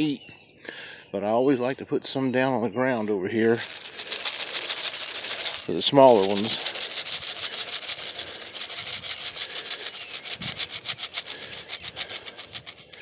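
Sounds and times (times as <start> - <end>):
bird seed rattling in container: 3.5 - 13.0.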